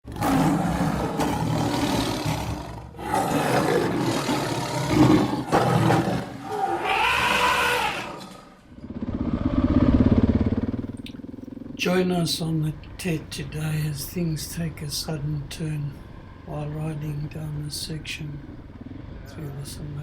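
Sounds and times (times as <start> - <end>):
motorcycle engine revving: 7.1 - 11.9.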